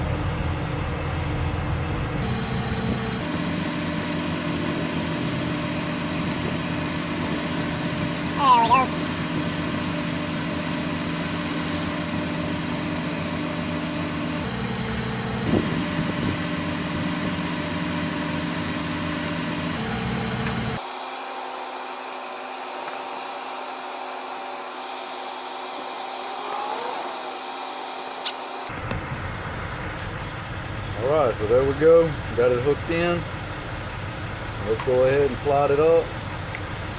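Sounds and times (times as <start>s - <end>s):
truck engine idling: 0.0s - 20.8s.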